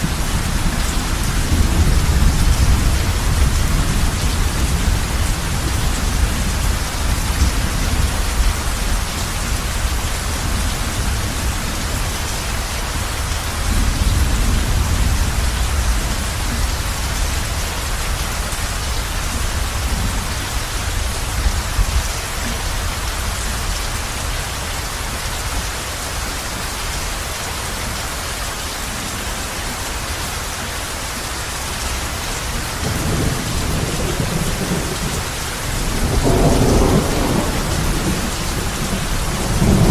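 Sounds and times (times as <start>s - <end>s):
low thunder rumbling: 0.0s - 12.0s, 32.8s - 39.9s
heavy rain on a roof: 0.0s - 39.9s.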